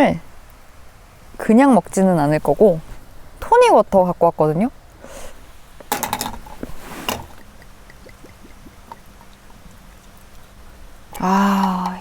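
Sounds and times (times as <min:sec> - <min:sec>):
hiss and rattle burst: 0:05.0 - 0:09.3
faint scattered ticks: 0:05.0 - 0:12.0.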